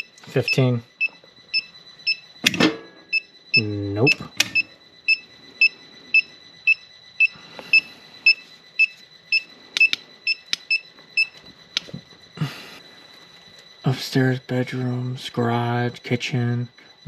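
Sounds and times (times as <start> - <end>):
sharp clicks: 9.7 - 12.0.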